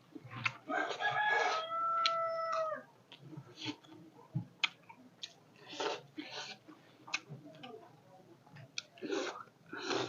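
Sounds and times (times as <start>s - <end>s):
rooster crowing: 0.7s - 2.9s.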